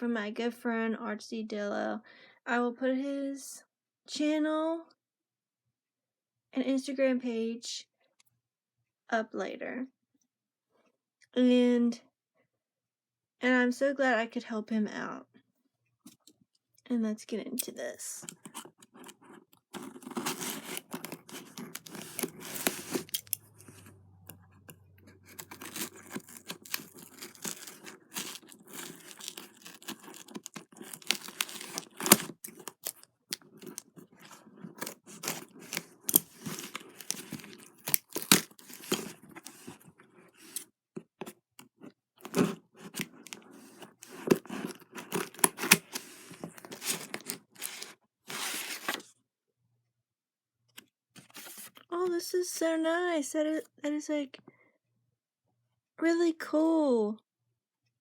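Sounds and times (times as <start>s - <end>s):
packaging being torn open: 19.8s - 23.8s, 25.2s - 39.8s, 42.2s - 49.0s.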